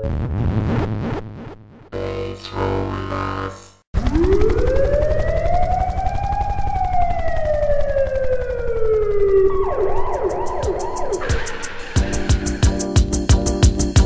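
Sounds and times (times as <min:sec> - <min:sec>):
siren-like wail: 0:02.0 - 0:12.3.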